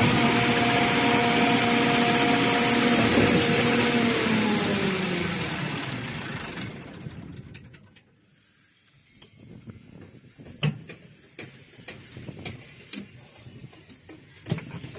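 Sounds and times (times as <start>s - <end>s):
pump machinery winding down: 0.0s - 7.6s.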